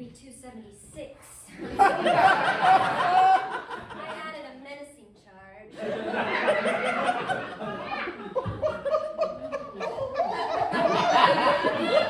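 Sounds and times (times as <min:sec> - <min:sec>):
audience laughing: 0:01.6 - 0:04.2, 0:05.8 - 0:12.0.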